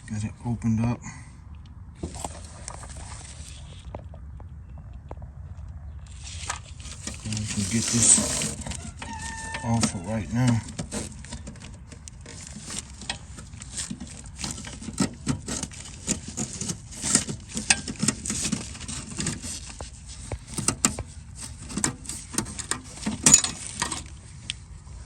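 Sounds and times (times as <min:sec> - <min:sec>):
metallic clinks and scrapes: 0:06.1 - 0:24.2.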